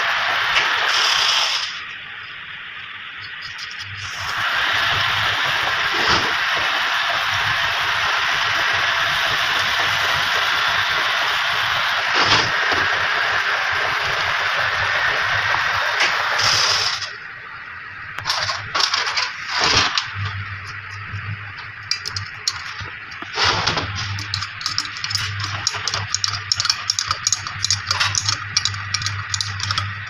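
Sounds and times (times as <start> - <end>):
small metal parts clinking: 3.2 - 4.0, 21.8 - 23.3, 24.0 - 30.0
steady low hum: 17.1 - 30.0.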